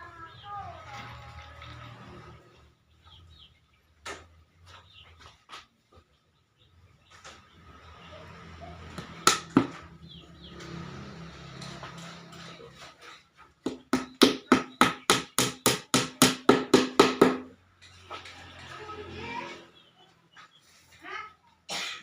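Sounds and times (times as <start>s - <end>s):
hammer driving nail into wood: 9.2s - 9.7s, 13.7s - 17.5s.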